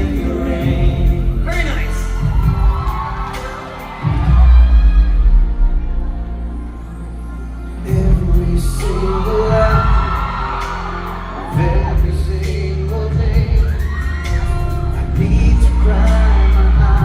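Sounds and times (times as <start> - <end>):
man singing: 0.0 - 2.2, 7.8 - 17.0
pop band playing: 0.0 - 6.3, 7.6 - 17.0.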